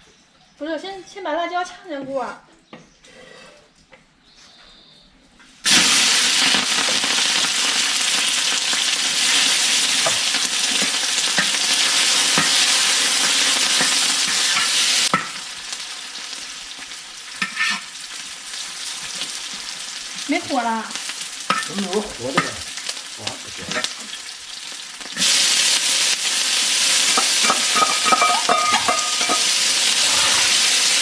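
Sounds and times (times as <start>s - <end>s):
chili peppers sizzling in hot oil: 5.6s - 31.0s.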